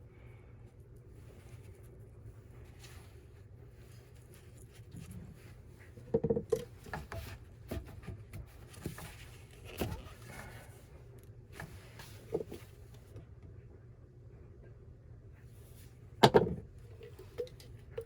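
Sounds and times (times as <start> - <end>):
steady low hum: 0.0 - 18.0
tools and parts knocking: 16.2 - 16.6.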